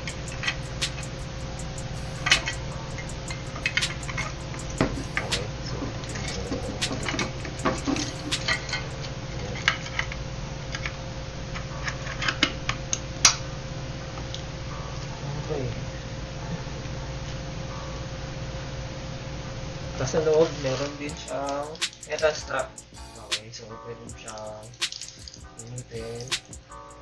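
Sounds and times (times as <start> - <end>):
steady low hum: 0.0 - 10.5.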